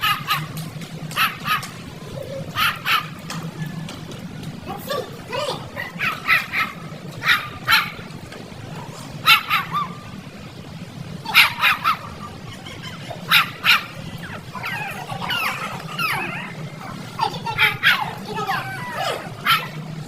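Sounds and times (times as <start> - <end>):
dog barking in high yaps: 0.0 - 0.6, 1.2 - 1.8, 2.5 - 3.2, 5.8 - 8.0, 9.2 - 10.0, 11.3 - 12.2, 13.2 - 16.6, 17.6 - 19.8
dog whining: 13.2 - 17.0.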